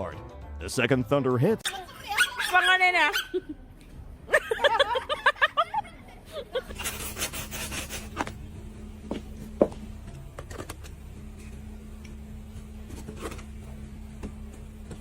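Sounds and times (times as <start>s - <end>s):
steady low hum: 3.6s - 15.0s.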